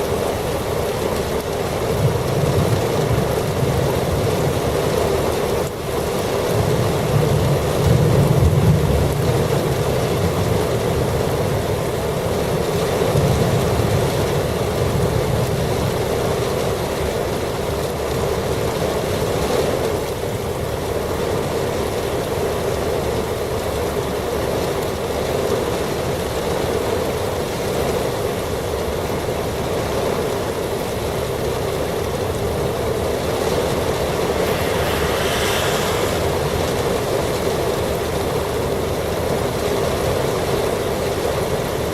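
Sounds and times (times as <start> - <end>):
heavy rain pouring: 0.0 - 41.9
gusty wind buffeting microphone: 31.2 - 39.6.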